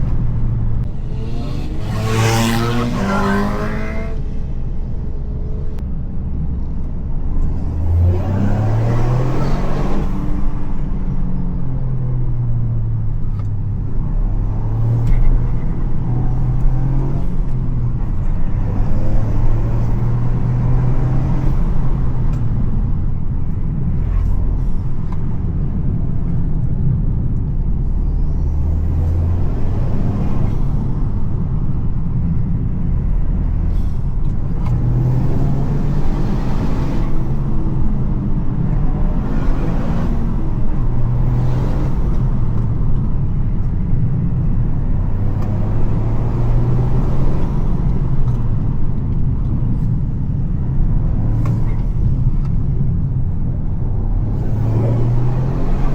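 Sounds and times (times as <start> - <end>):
car engine revving: 0.0 - 4.6, 7.5 - 10.8, 50.6 - 55.9.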